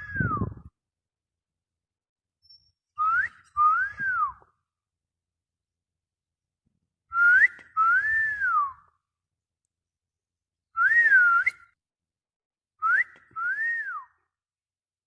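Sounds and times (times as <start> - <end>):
person whistling sliding notes: 2.5 - 4.4.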